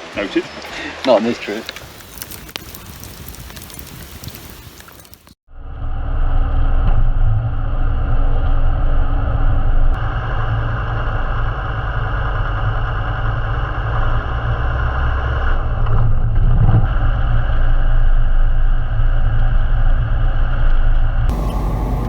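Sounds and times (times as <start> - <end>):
engine running with low drone: 6.0 - 16.4, 17.0 - 22.0.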